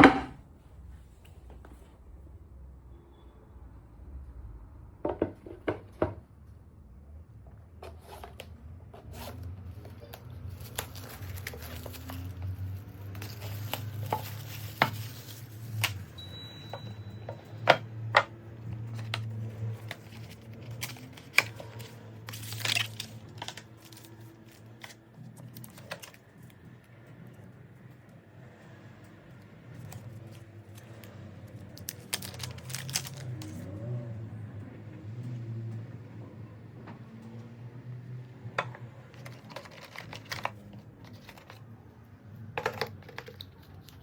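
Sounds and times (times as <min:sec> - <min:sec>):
packaging tearing and crinkling: 0:09.2 - 0:16.2, 0:18.9 - 0:26.3, 0:31.6 - 0:33.6, 0:39.2 - 0:41.6.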